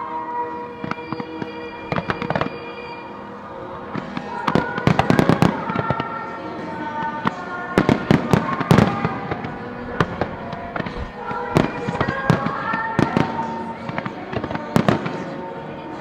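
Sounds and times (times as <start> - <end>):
music: 0.0 - 16.0
fireworks bangs and crackles: 1.9 - 2.6, 3.9 - 6.0, 7.2 - 15.4.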